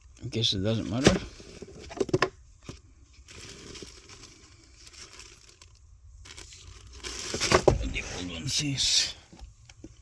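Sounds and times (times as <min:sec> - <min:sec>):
air filter handling noise: 0:06.5 - 0:08.2.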